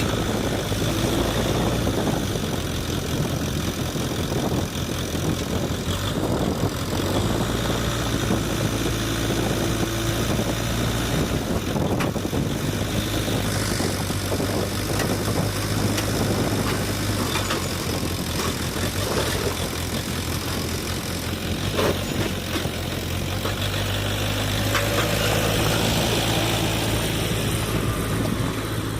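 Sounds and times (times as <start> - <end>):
diesel engine running: 0.0 - 28.9.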